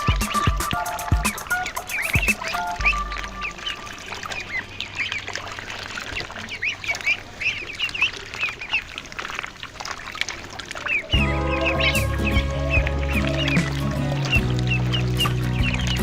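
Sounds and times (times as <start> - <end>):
ducklings peeping: 0.0 - 16.0.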